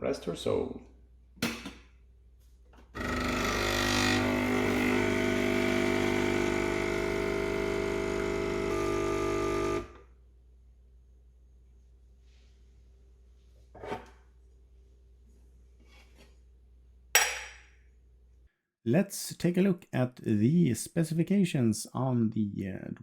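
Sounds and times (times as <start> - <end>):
coffee machine pump buzzing: 3.0 - 10.0.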